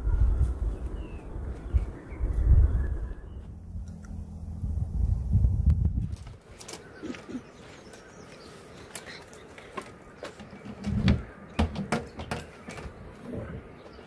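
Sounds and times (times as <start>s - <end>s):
faint bird calls: 6.6s - 11.6s.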